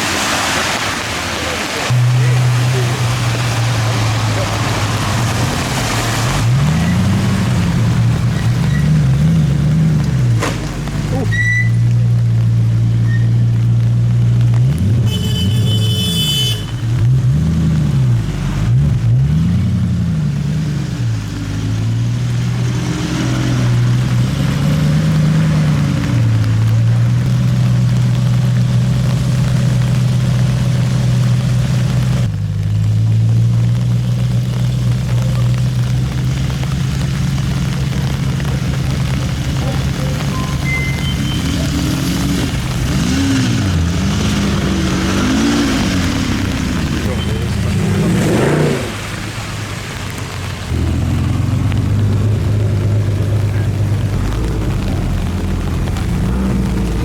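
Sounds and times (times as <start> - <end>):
car engine revving: 0.0 - 57.0
short high-pitched squeak: 11.3 - 11.8, 40.2 - 41.6.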